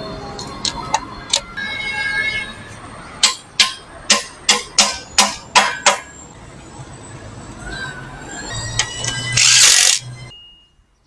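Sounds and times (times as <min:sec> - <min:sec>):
sharp ringing knocks: 0:03.2 - 0:06.2.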